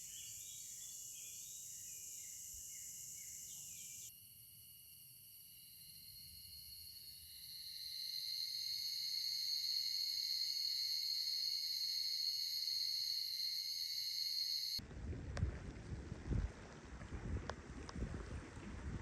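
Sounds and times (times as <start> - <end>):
insects droning: 0.0 - 14.8
wind rumbling on microphone: 14.8 - 19.0.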